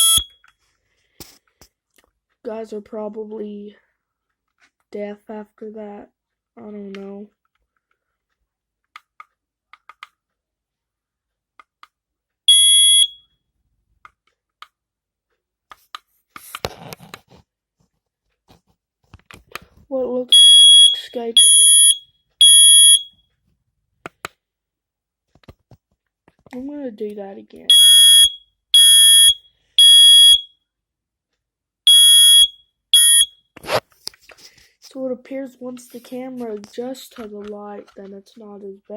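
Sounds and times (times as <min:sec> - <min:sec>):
smoke alarm beep: 0:00.0 - 0:00.4, 0:12.5 - 0:13.2, 0:20.3 - 0:23.2, 0:27.7 - 0:30.5, 0:31.9 - 0:33.4.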